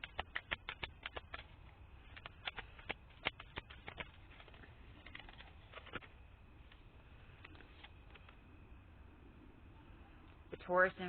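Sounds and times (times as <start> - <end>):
tarot cards clicking and tapping: 0.0 - 6.1.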